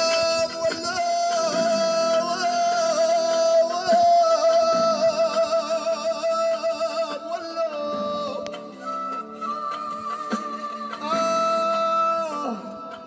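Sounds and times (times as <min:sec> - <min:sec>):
person singing long wavering note: 0:00.0 - 0:01.0
instrumental backing: 0:00.0 - 0:13.0.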